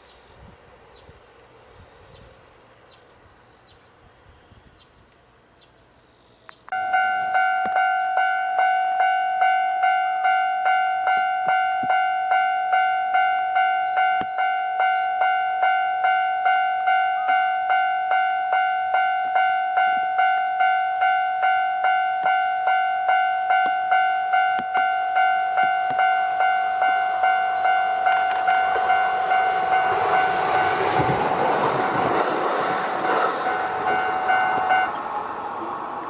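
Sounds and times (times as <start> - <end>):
train passing on rails: 0.0 - 36.0
level crossing warning bell: 6.7 - 35.0.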